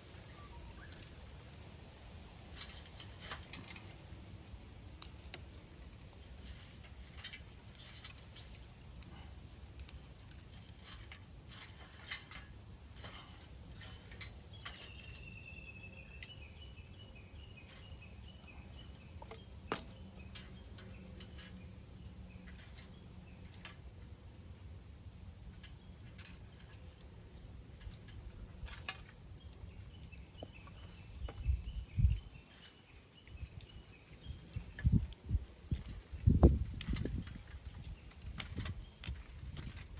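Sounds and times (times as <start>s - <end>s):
bird chirping: 0.0s - 1.2s, 14.4s - 23.7s, 29.3s - 35.1s.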